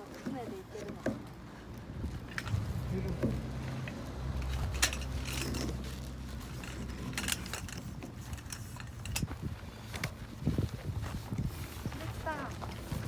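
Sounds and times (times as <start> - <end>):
parts clicking and rattling: 2.2 - 10.2
low steady hum: 2.4 - 6.8.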